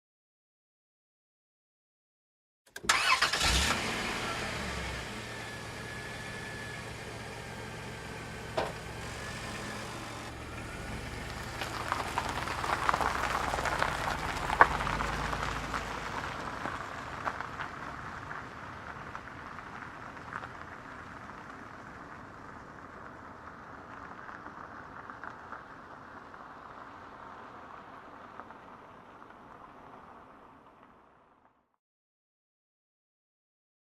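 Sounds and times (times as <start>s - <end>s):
car engine idling: 2.8s - 24.9s
tyres crunching on gravel: 2.9s - 31.4s.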